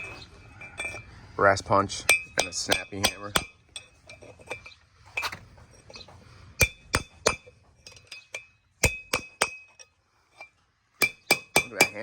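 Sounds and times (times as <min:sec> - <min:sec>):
hammer striking metal punch: 0:02.1 - 0:03.6, 0:08.4 - 0:09.7, 0:11.0 - 0:12.0.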